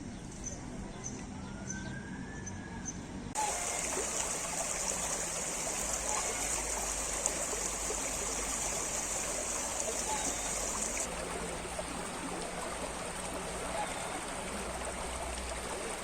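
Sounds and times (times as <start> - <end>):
stream water flowing: 3.4 - 16.0.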